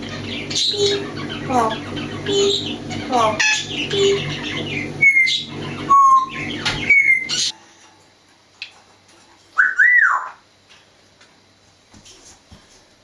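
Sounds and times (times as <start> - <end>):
parrot whistling: 3.4 - 7.5, 9.6 - 10.4.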